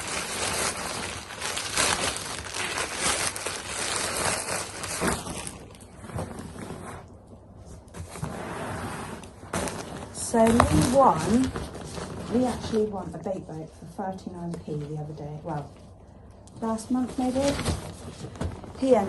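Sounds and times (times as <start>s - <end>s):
packaging rustling and crinkling: 0.0s - 13.1s, 16.6s - 19.0s.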